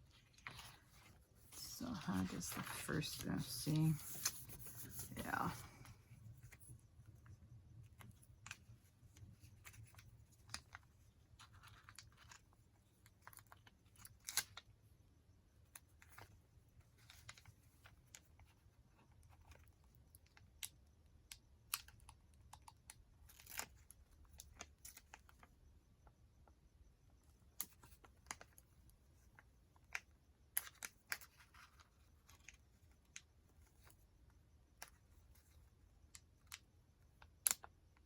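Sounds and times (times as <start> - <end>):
paper rustling: 0.1 - 5.9.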